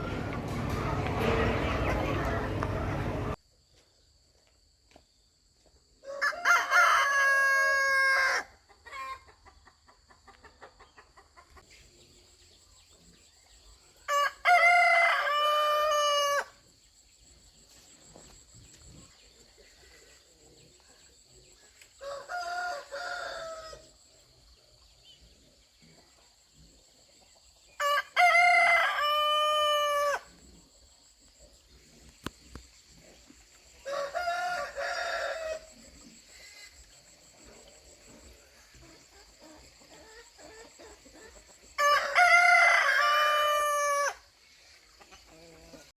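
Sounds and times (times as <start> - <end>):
rooster crowing: 0.0 - 3.4, 14.1 - 16.5, 22.0 - 23.8, 27.8 - 30.3, 33.8 - 35.7, 41.8 - 44.2.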